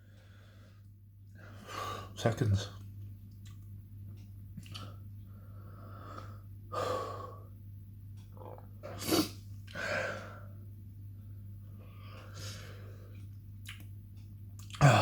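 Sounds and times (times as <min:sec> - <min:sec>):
man breathing hard: 0:05.3 - 0:07.5, 0:09.7 - 0:10.6.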